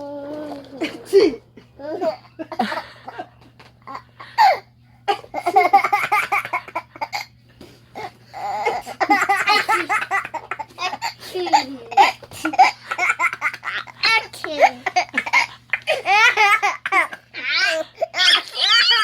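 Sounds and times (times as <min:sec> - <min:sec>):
baby laughing: 0:03.8 - 0:07.3, 0:08.4 - 0:19.0.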